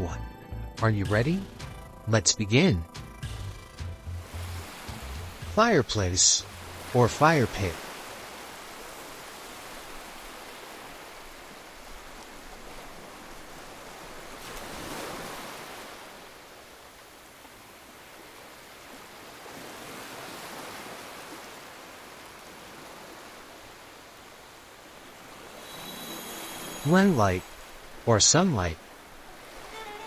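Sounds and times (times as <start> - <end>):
soft steady rushing noise: 23.4 - 30.0.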